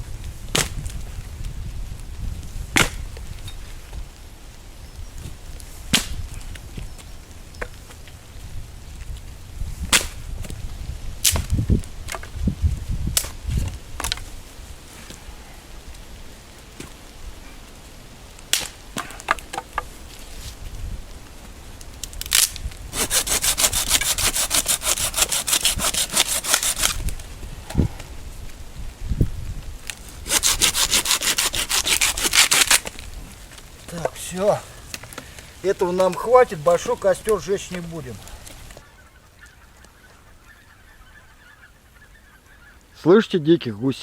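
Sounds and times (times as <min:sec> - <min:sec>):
dry branches snapping: 0:00.5 - 0:01.6, 0:02.7 - 0:04.0, 0:05.2 - 0:08.2, 0:09.8 - 0:14.4, 0:18.3 - 0:28.6, 0:29.5 - 0:38.8
hand saw cutting wood: 0:22.9 - 0:27.1, 0:30.2 - 0:33.0.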